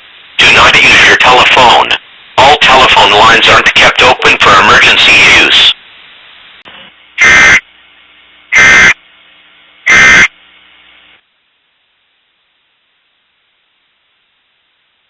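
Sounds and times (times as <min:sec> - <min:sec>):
alert data tone bursts: 0:07.2 - 0:07.6, 0:08.6 - 0:09.0, 0:09.9 - 0:10.3.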